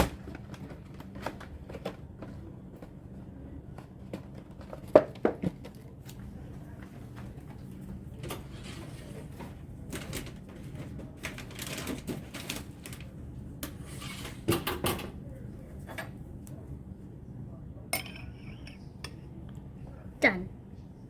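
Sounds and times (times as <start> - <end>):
dishes and utensils clattering: 18.0 - 18.8.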